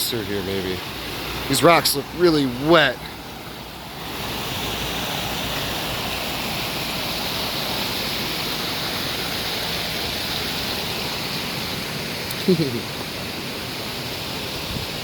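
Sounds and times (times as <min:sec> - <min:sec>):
waterfall rushing over rocks: 0:00.0 - 0:15.0.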